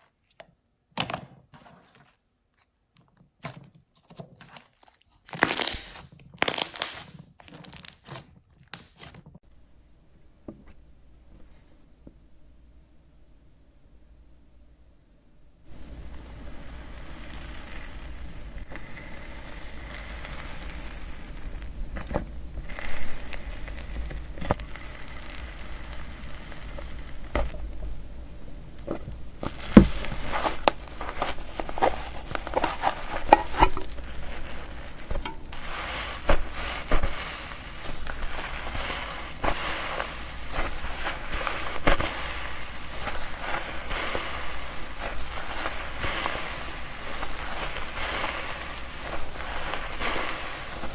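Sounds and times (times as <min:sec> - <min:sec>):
slime squished by hand: 0:03.4 - 0:09.3, 0:28.8 - 0:50.9.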